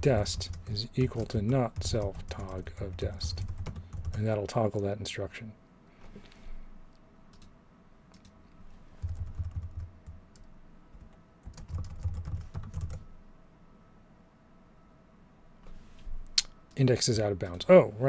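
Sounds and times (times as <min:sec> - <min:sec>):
computer keyboard typing: 0:00.0 - 0:04.3, 0:09.0 - 0:13.0.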